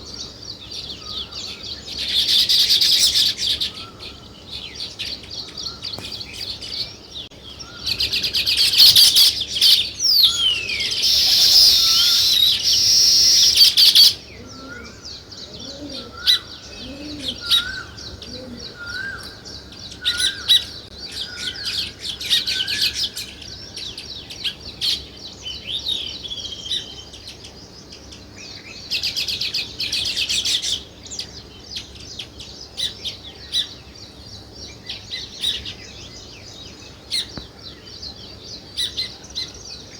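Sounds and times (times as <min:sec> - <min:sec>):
sparrows chirping: 0:00.0 - 0:39.9.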